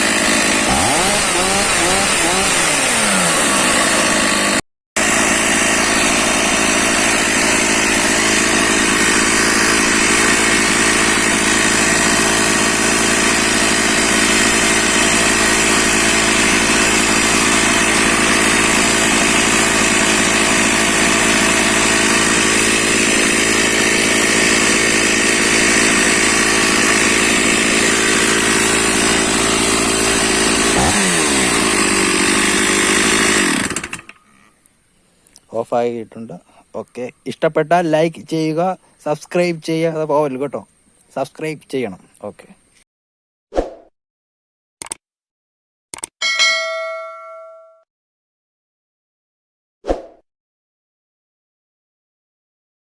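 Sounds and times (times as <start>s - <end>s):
chainsaw engine running: 0.0s - 34.6s.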